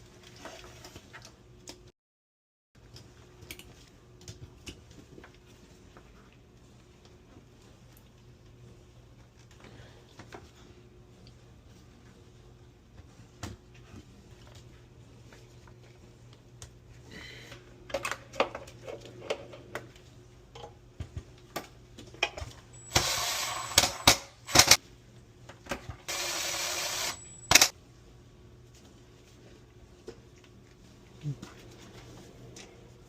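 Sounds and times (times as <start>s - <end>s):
hissing bursts: 22.8s - 24.8s, 26.1s - 27.7s.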